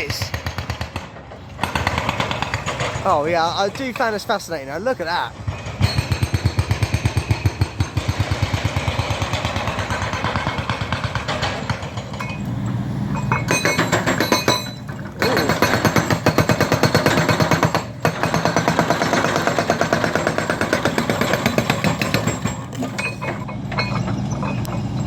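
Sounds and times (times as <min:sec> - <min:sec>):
hydraulic breaker hammering concrete: 0:00.0 - 0:04.2, 0:05.1 - 0:25.0.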